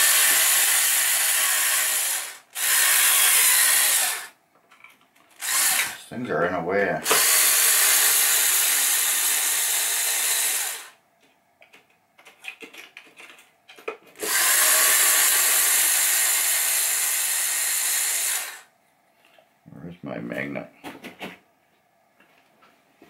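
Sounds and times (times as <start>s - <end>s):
cordless screwdriver running: 0.0s - 4.3s, 5.4s - 6.0s, 7.0s - 10.9s, 14.2s - 18.6s.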